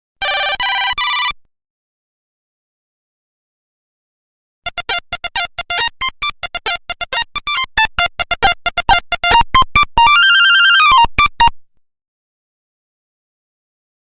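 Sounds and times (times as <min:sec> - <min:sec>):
monophonic ringtone beeps: 0:04.7 - 0:11.5.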